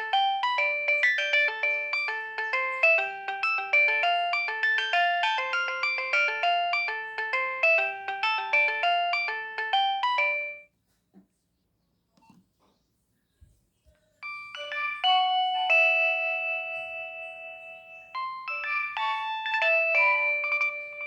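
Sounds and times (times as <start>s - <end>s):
electronic ringtone melody: 0.0s - 10.6s, 14.2s - 21.0s.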